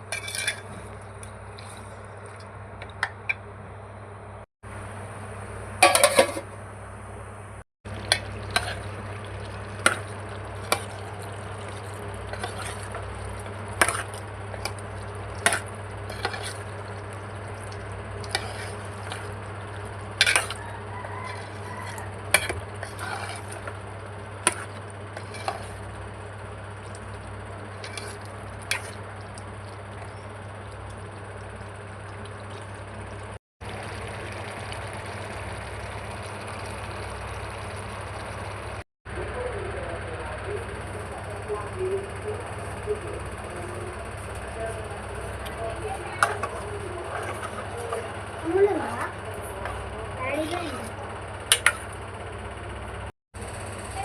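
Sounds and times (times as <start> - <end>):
spoon scraping and knocking pan: 0.0 - 0.9, 5.8 - 6.5, 9.8 - 17.1, 18.2 - 19.5, 20.1 - 23.8, 24.4 - 25.8, 45.2 - 48.2, 51.5 - 51.9
steady low hum: 0.0 - 54.0
curry sizzling in a pan: 7.9 - 38.8, 44.1 - 52.0.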